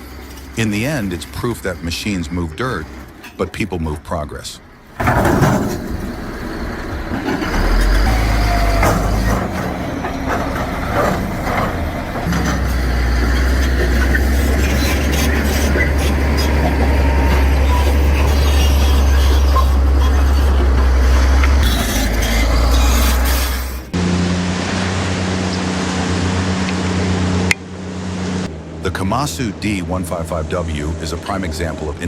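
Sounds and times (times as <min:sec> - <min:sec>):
diesel engine running: 0:00.0 - 0:32.0
knocks and clanks: 0:04.8 - 0:23.9.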